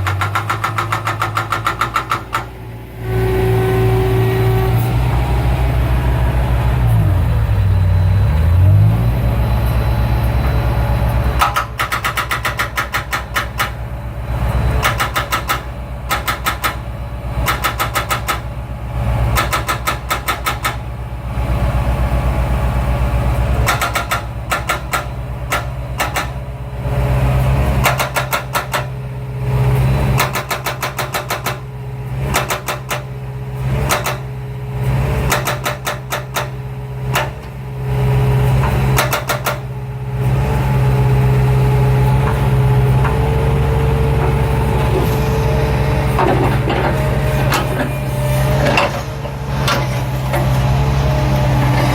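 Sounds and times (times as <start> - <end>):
breaker hammering concrete: 0.0 - 2.6, 11.4 - 13.8, 14.8 - 18.5, 19.3 - 20.8, 23.6 - 26.4, 27.8 - 29.0, 30.2 - 31.7, 32.3 - 33.2, 35.2 - 37.5, 38.6 - 39.8
machine engine running: 0.0 - 17.7, 34.9 - 51.9.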